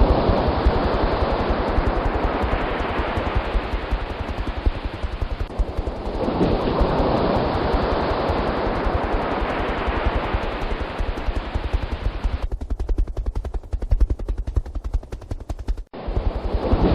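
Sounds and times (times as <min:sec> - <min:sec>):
loud rushing wind-like noise: 0:00.0 - 0:16.9
helicopter rotor thudding: 0:01.7 - 0:06.6.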